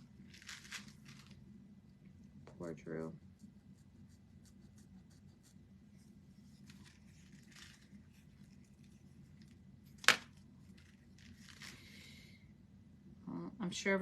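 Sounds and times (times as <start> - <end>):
hands scratching and rustling: 0.0 - 1.5, 3.3 - 12.0.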